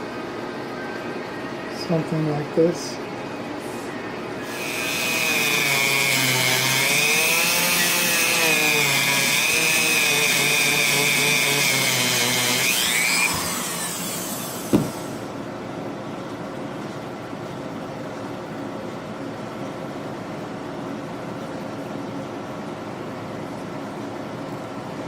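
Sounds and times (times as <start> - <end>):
power tool grinding metal: 4.4 - 15.2.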